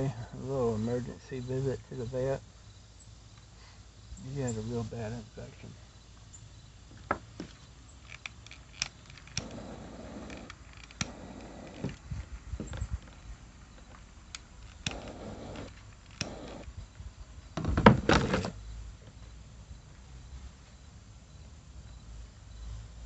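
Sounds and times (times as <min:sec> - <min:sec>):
rustling: 0:03.2 - 0:19.2
clicks from handling parts: 0:07.4 - 0:09.6, 0:10.3 - 0:12.0, 0:12.6 - 0:16.5
knocking and rattling: 0:17.6 - 0:18.5.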